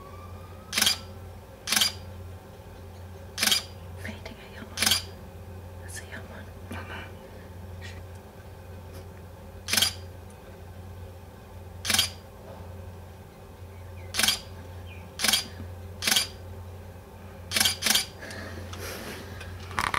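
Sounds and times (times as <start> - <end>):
steady low hum: 0.0 - 19.9
camera shutter clicking: 0.8 - 1.0, 1.7 - 2.0, 3.4 - 3.7, 9.7 - 10.0, 11.8 - 12.2, 15.2 - 16.3, 17.5 - 18.1.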